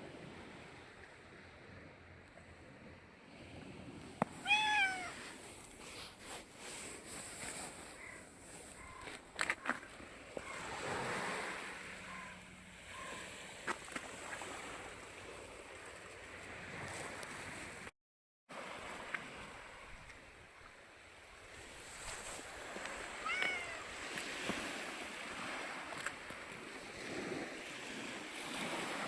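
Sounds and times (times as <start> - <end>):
sea surf washing on shore: 21.4 - 29.0.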